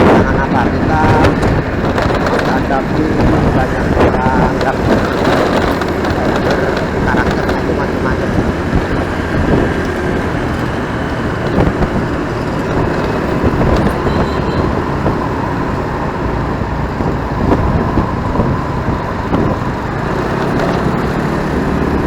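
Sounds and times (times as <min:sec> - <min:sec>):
motorcycle engine: 0:00.0 - 0:22.0
road and wind noise: 0:00.0 - 0:22.0
surrounding vehicles: 0:00.0 - 0:22.0.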